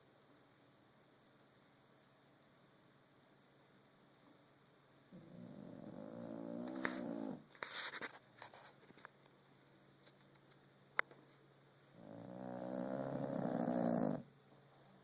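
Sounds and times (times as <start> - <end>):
dog snoring: 5.1 - 7.5, 12.0 - 14.3.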